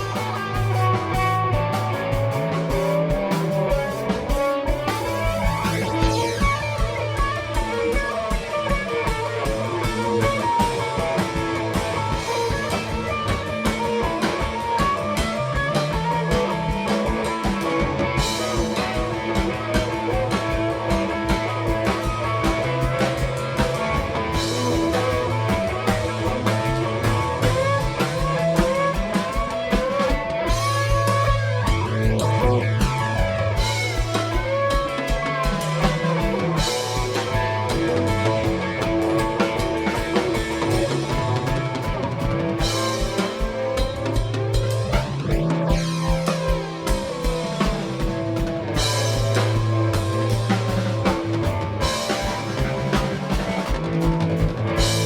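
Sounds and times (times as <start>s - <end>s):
bass guitar: 0.0s - 55.0s
drum kit steady beat: 0.0s - 55.0s
electric guitar lines: 0.0s - 55.0s.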